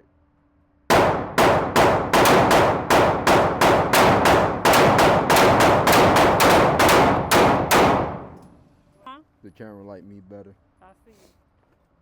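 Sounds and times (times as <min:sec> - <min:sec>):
pistol firing rapid shots: 0:00.9 - 0:08.6.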